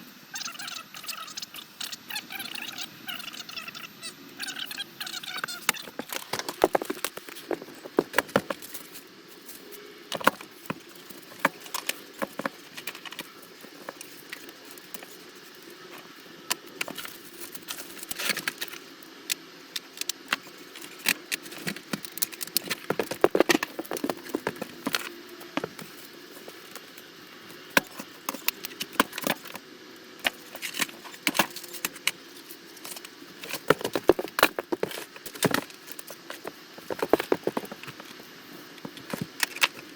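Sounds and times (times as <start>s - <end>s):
faint steady hum: 0.0s - 39.9s
cables and clips rattling: 5.7s - 16.0s, 19.7s - 27.0s, 30.2s - 39.9s.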